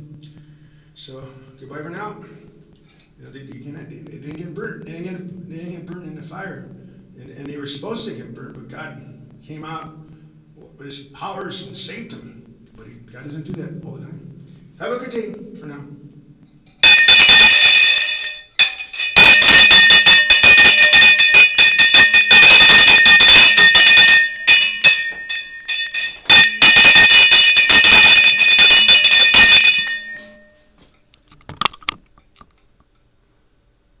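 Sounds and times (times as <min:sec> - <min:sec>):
bell ringing rapidly: 0:16.8 - 0:30.6.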